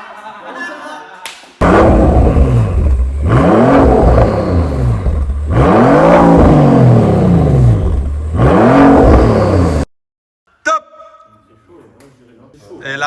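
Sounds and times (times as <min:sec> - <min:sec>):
engine revving: 0:01.6 - 0:09.9.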